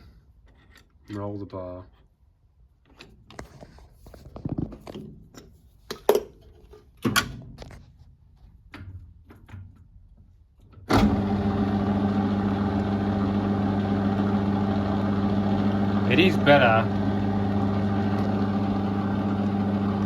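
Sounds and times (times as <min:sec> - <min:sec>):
lathe spindle humming: 0:11.0 - 0:20.0.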